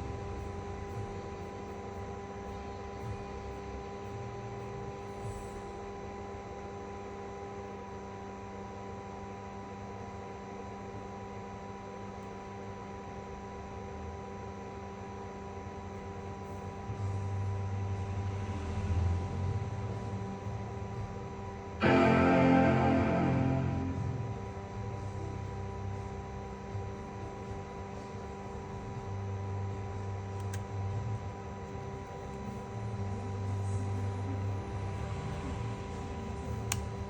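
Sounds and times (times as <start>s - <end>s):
music: 17.0s - 37.0s
low rumble: 21.8s - 24.6s
electrical hum: 21.8s - 26.3s.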